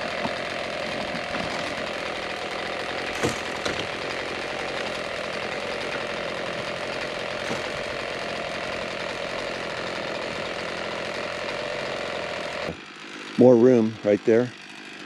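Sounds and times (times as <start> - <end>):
chainsaw running: 0.0 - 15.0
sharp knocks: 3.1 - 4.0.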